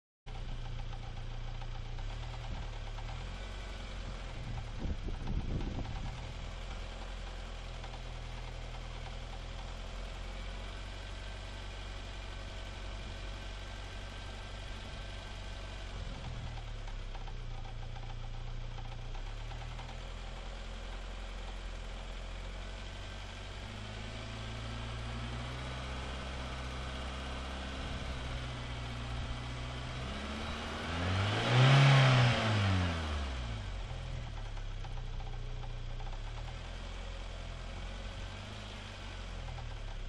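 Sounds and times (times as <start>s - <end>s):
engine knock: 0.3s - 25.8s, 33.6s - 40.0s
car engine idling and revving: 0.3s - 40.0s.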